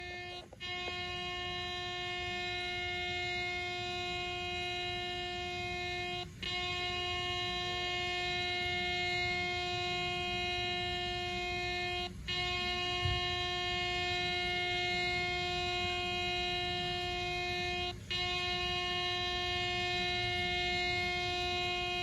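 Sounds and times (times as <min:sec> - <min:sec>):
air horn blasts: 0:00.0 - 0:22.0.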